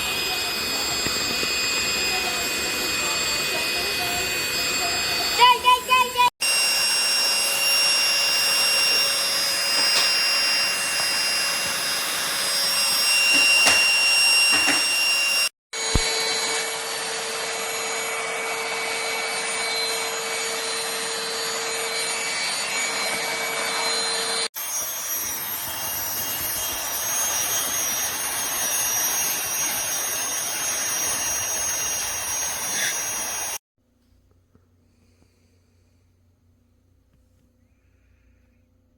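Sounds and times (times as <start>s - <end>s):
handheld vacuum cleaner running: 0.0s - 33.6s.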